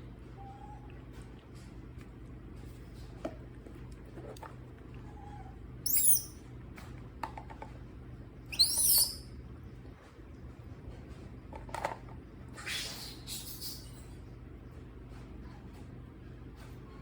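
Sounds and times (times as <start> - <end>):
baby monkey crying: 5.9 - 6.4, 8.6 - 9.2.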